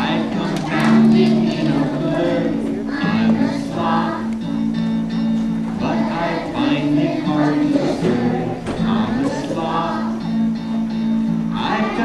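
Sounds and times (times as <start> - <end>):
person singing: 0.0 - 4.4, 5.8 - 10.5, 11.5 - 12.0.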